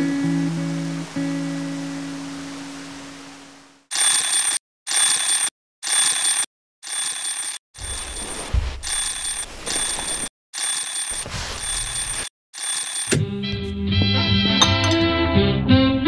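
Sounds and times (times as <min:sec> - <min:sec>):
alarm clock ringing: 0:03.9 - 0:13.2.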